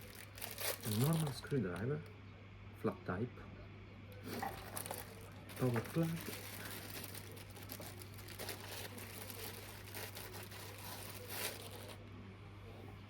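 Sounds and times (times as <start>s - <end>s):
plastic packaging crinkling: 0.0s - 1.8s, 4.2s - 12.0s.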